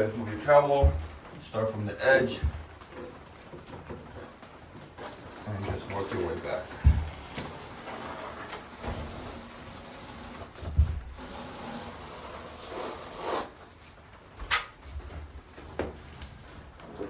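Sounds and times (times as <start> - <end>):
trowel scraping mortar: 4.9 - 13.6
dull knock: 6.8 - 7.2.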